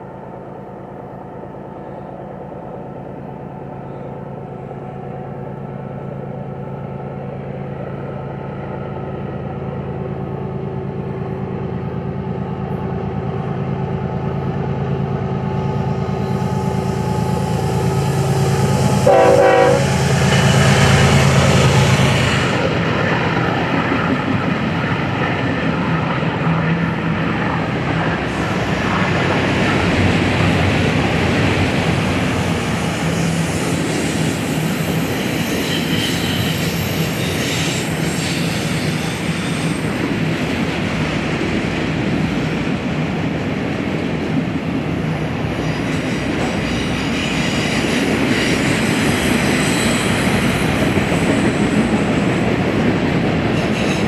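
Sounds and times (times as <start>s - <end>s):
train wheels rumbling on rails: 0.0s - 54.0s
high wheel squeal: 32.3s - 40.2s, 45.5s - 52.5s.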